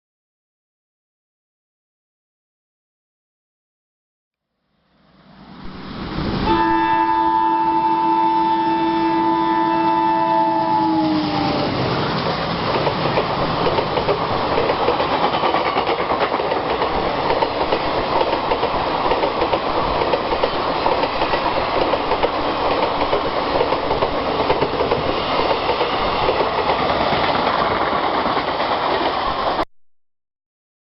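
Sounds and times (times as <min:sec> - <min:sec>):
locomotive horn blast: 0:06.4 - 0:11.8
train wheels rattling over rail joints: 0:11.8 - 0:29.6.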